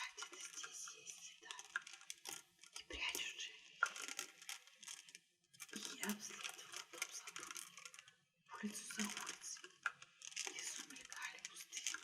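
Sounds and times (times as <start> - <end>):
crystals clinking together: 8.8 - 12.0.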